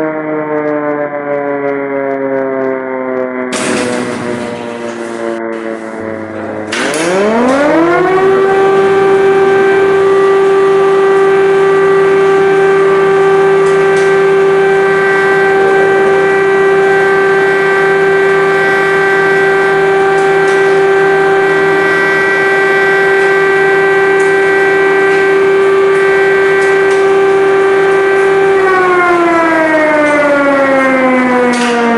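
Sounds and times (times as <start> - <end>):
civil defense siren wailing: 0.0 - 31.9.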